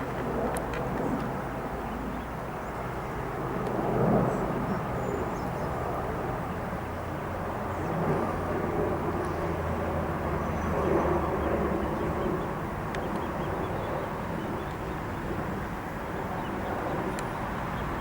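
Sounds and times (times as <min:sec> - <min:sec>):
light plane engine droning: 0:00.0 - 0:18.0.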